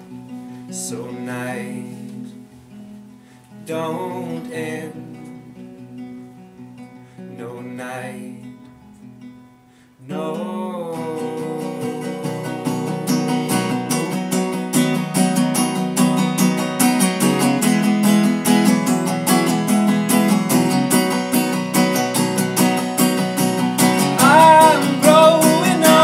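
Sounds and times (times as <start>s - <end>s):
acoustic guitar strumming chords: 0.0s - 26.0s
person singing: 0.7s - 2.5s, 3.6s - 5.5s, 7.3s - 8.6s, 10.0s - 15.0s, 23.9s - 26.0s.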